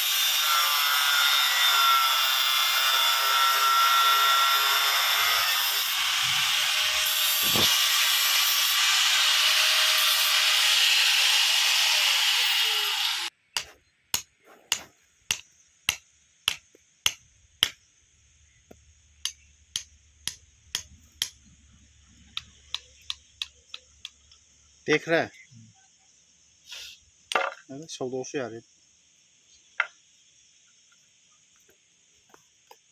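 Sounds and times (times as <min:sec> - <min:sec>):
power tool cutting iron bar: 0:00.0 - 0:13.3.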